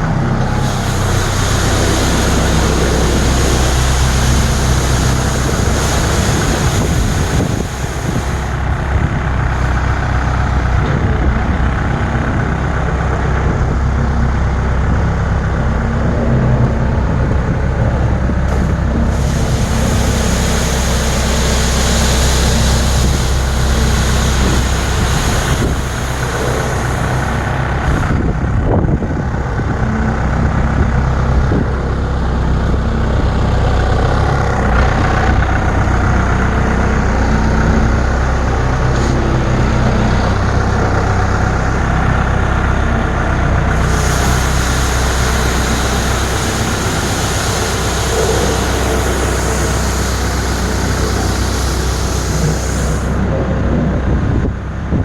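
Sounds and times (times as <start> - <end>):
rough hissing noise: 0.0 - 10.8, 18.5 - 28.5, 43.6 - 53.3
diesel engine running: 0.0 - 55.0.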